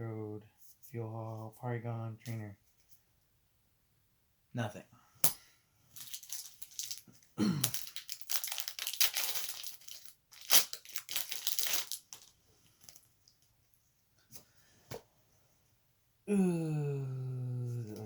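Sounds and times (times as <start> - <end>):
foil wrapper crinkling and tearing: 6.0 - 13.1.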